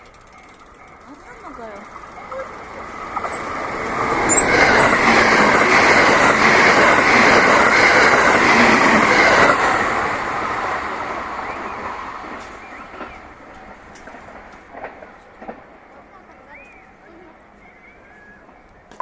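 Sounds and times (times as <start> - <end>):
electric train passing: 0.0 - 19.0.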